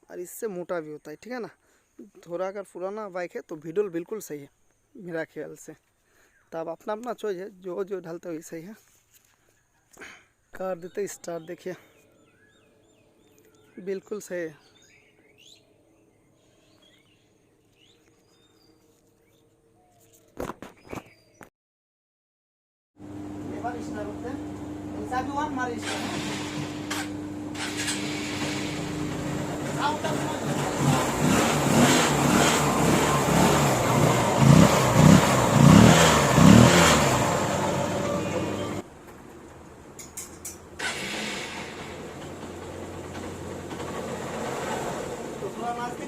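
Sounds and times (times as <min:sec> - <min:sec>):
faint birds chirping: 0:00.0 - 0:21.5
motorcycle engine revving: 0:24.5 - 0:38.8, 0:40.8 - 0:46.0.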